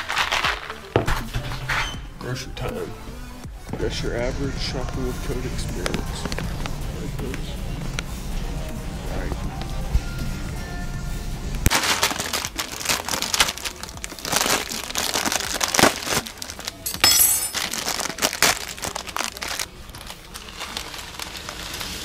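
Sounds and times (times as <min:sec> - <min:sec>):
packaging crinkling and rustling: 0:11.7 - 0:22.0.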